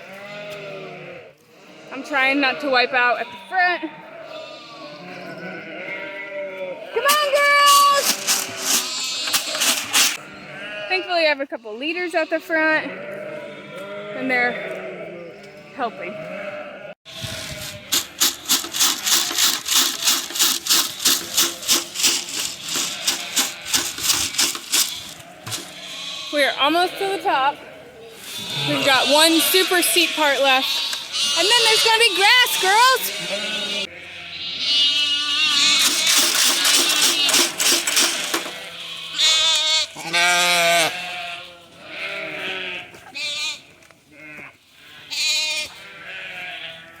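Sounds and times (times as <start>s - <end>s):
sheep bleating: 0.0s - 47.0s
dry corn rattling in container: 7.1s - 10.2s, 17.1s - 25.9s, 35.6s - 38.6s
scuffing rustling noise: 7.1s - 10.2s, 17.1s - 26.2s.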